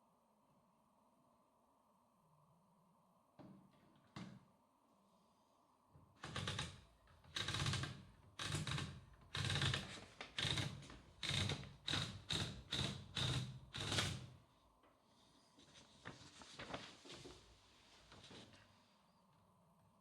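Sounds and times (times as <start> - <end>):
typewriter clicks and clatters: 6.2 - 14.4.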